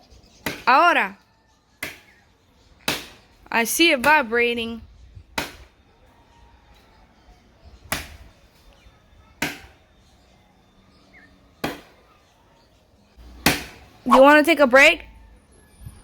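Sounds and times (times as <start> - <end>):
blade chopping tree trunk: 0.4 - 0.8, 1.8 - 2.2, 2.8 - 3.3, 5.4 - 5.8, 7.9 - 8.4, 9.4 - 9.8, 11.6 - 12.0, 13.4 - 13.9.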